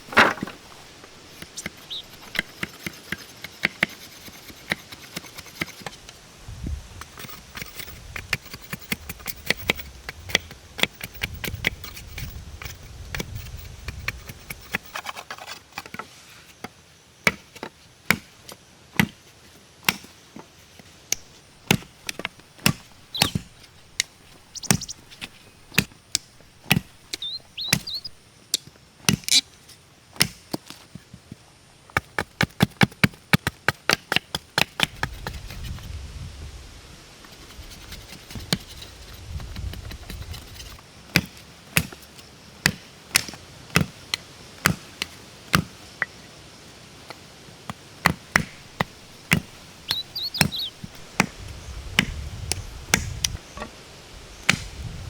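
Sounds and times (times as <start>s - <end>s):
tool striking wood: 0.0s - 0.8s, 21.1s - 28.2s, 48.0s - 51.4s.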